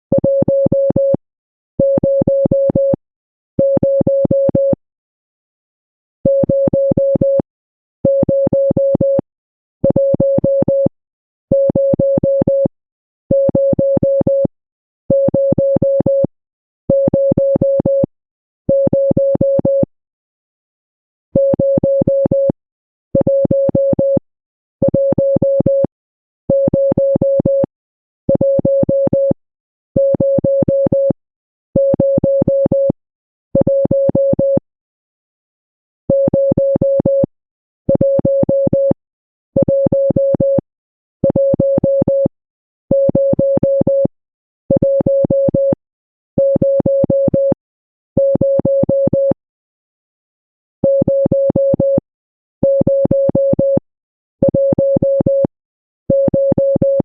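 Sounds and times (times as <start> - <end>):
morse code beeps: 0.1 - 1.2, 8.1 - 9.2, 9.8 - 10.9, 31.8 - 33.0, 37.9 - 39.0, 39.6 - 40.6, 41.2 - 42.3, 44.8 - 45.8, 46.4 - 47.6, 48.2 - 49.4, 50.8 - 52.0, 54.5 - 55.5, 56.1 - 57.0.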